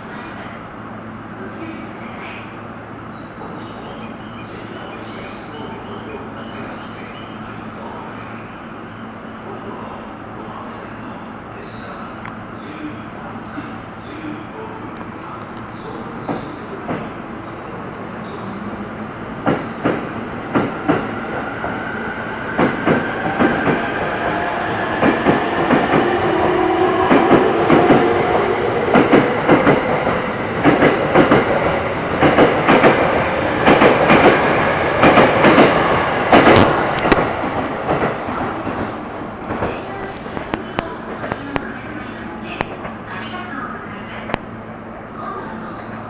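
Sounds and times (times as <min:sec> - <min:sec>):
train wheels clicking over rail joints: 0:28.8 - 0:41.7.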